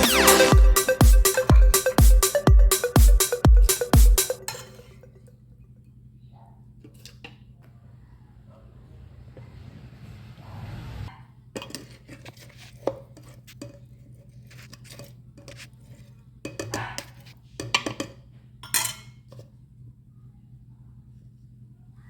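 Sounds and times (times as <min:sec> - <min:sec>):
metal utensil clinking on cookware: 0:11.6 - 0:13.9, 0:16.5 - 0:19.2.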